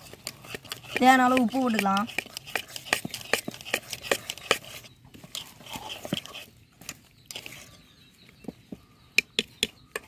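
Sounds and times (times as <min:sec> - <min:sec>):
utensils clicking against a bowl: 0:00.2 - 0:04.6.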